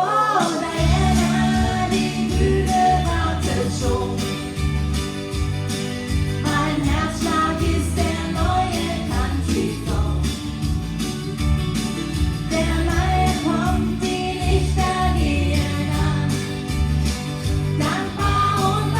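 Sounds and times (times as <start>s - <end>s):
country song with vocals: 0.0s - 18.9s
prominent bass: 0.7s - 18.9s.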